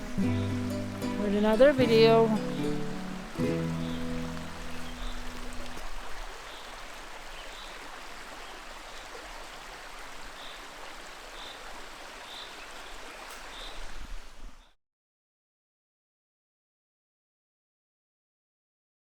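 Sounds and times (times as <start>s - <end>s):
creek water rushing: 0.0s - 14.7s.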